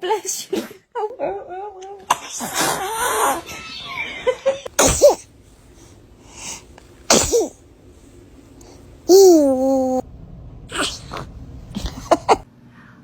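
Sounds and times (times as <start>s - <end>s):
baby sneezing: 4.8s - 5.2s, 7.1s - 7.5s.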